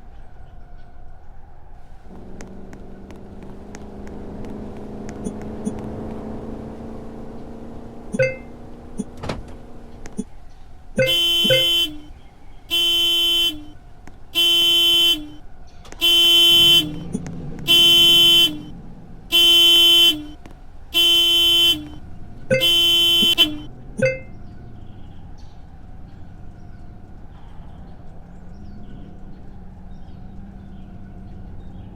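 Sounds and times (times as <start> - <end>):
toy car horn honking: 8.1 - 9.2, 11.0 - 13.8, 14.4 - 18.7, 19.3 - 20.4, 21.0 - 24.3
short electronic chirps: 8.2 - 8.6, 11.0 - 12.1, 24.0 - 24.3.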